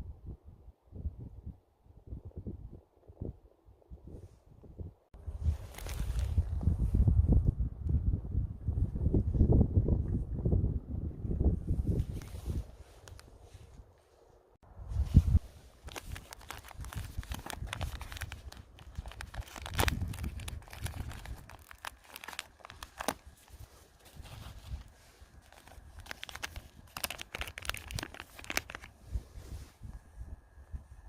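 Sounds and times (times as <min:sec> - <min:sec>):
wind buffeting microphone: 0:00.0 - 0:13.9, 0:14.6 - 0:31.0
crackling and rustling: 0:05.4 - 0:06.6, 0:15.1 - 0:29.8.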